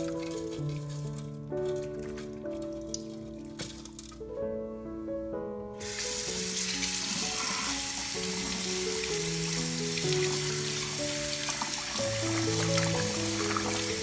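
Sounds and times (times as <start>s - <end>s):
background music: 0.0s - 14.0s
food sizzling in a pan: 5.8s - 14.0s.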